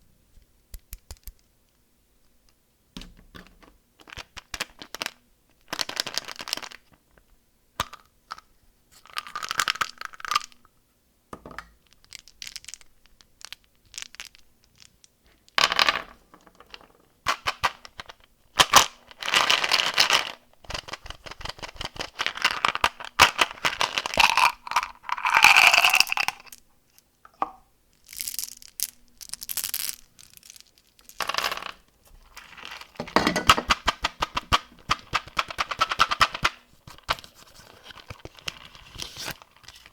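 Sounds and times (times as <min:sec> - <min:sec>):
candy wrappers crinkling: 0:20.7 - 0:26.6, 0:28.0 - 0:33.0.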